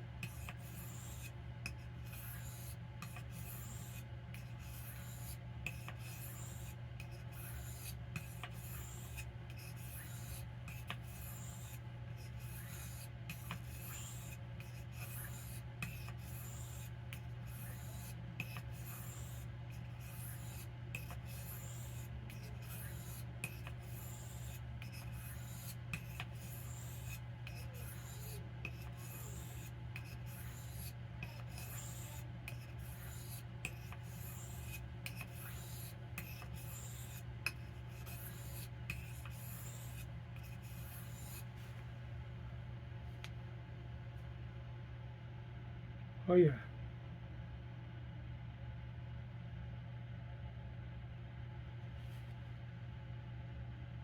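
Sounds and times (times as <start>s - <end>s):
faint low hum: 0.0s - 54.0s
knife scraping on whetstone: 0.2s - 41.5s.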